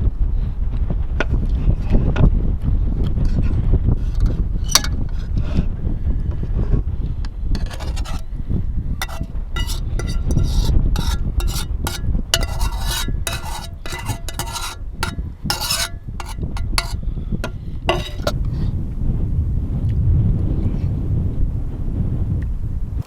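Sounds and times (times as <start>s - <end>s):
strong wind rumble: 0.0s - 9.6s, 14.8s - 23.0s
scraping and rustling: 4.1s - 5.1s, 7.6s - 8.2s, 9.0s - 18.4s.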